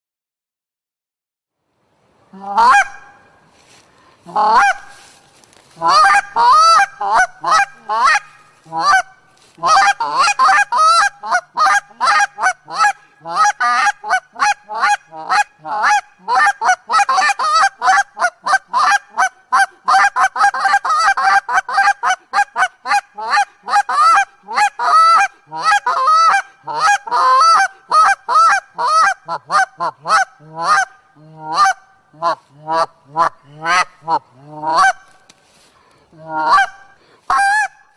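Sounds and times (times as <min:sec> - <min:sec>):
geese honking: 0:02.4 - 0:35.3, 0:36.2 - 0:37.9.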